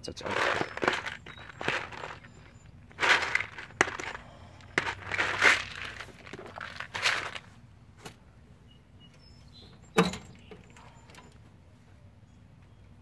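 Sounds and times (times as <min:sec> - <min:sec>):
rustling: 0:00.2 - 0:07.5.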